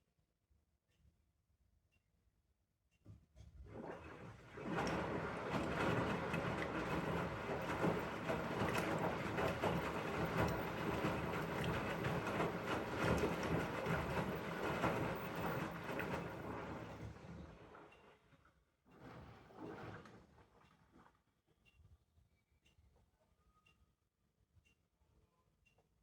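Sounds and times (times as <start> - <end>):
washing machine drum turning: 3.7 - 17.5.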